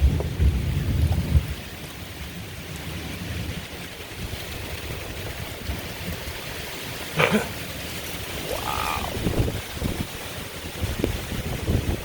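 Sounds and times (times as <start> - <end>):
low rumble of thunder: 0.0 - 1.6
storm wind rushing: 8.3 - 12.0.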